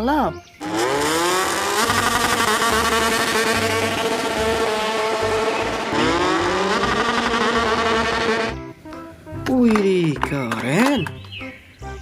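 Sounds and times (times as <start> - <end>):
racing engine revving: 0.6 - 8.6.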